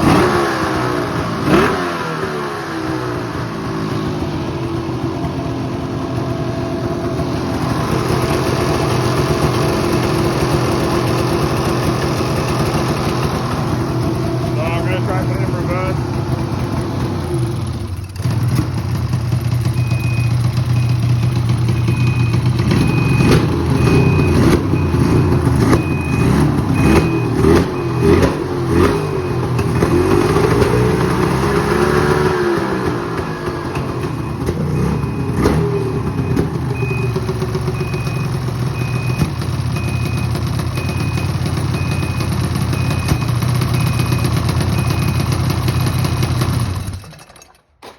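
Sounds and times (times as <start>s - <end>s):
snowmobile engine idling and revving: 0.0s - 47.6s
high beep: 19.6s - 46.2s.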